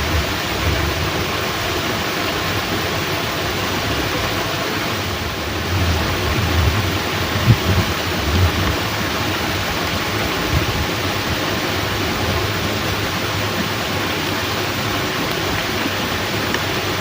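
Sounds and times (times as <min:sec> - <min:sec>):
heavy rain: 0:00.0 - 0:17.0
water rushing from sluice gate: 0:00.0 - 0:17.0
low thumps: 0:05.4 - 0:09.6.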